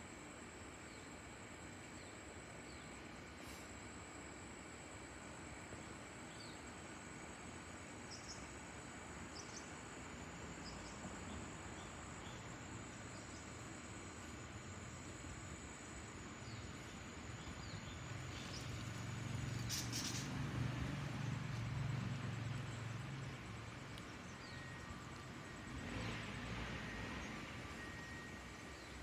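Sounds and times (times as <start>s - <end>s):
brief high hiss: 3.4s - 3.8s.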